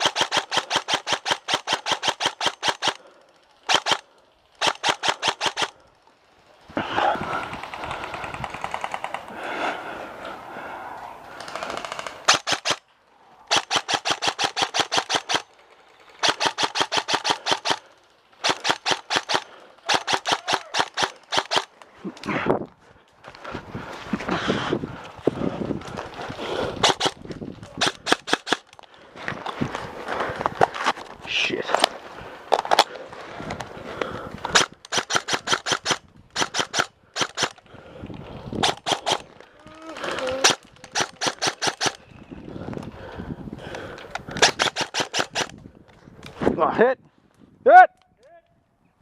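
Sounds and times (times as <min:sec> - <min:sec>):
airsoft gun firing bursts: 0:00.0 - 0:03.1, 0:03.7 - 0:04.0, 0:04.6 - 0:05.8, 0:11.4 - 0:12.8, 0:13.5 - 0:21.8, 0:26.8 - 0:27.2, 0:27.8 - 0:28.7, 0:34.5 - 0:37.6, 0:38.6 - 0:39.3, 0:40.4 - 0:42.0, 0:44.4 - 0:45.5.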